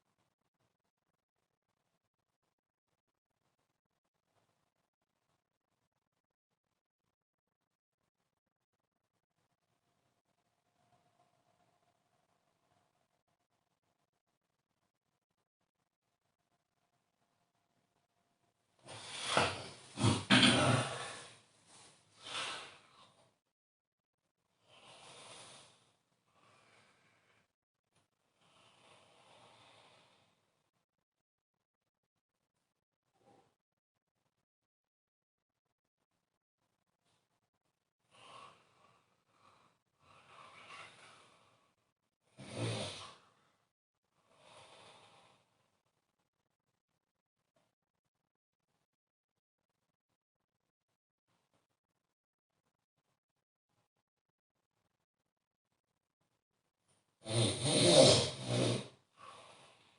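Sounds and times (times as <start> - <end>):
faint breaths: 18.8 - 23.2, 24.6 - 27.5, 28.3 - 30.7, 38.0 - 45.8, 57.4 - 59.9
person snoring: 18.9 - 21.4, 38.1 - 41.6, 42.3 - 43.4, 44.3 - 45.5, 57.2 - 59.9.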